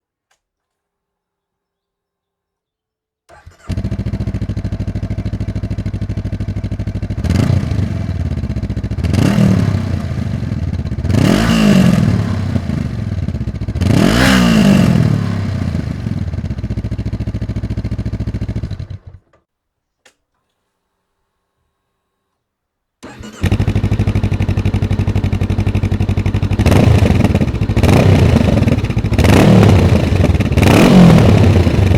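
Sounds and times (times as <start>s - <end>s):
motorcycle engine idling and revving: 3.3s - 19.4s, 23.0s - 31.9s.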